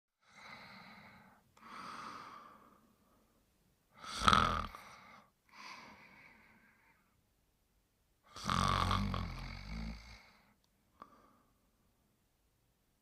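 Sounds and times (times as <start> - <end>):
person snoring: 4.0 - 6.2, 8.3 - 11.2.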